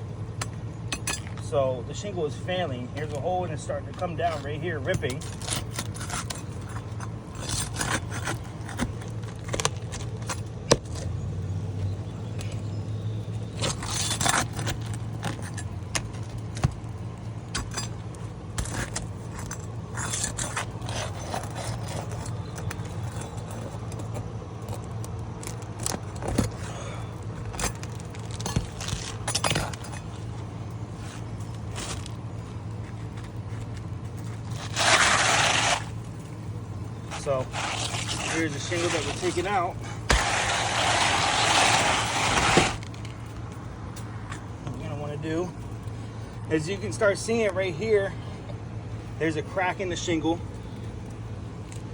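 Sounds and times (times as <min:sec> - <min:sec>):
steady low hum: 0:00.0 - 0:51.9
shingle scraping and ripping: 0:03.0 - 0:11.2, 0:13.4 - 0:44.8.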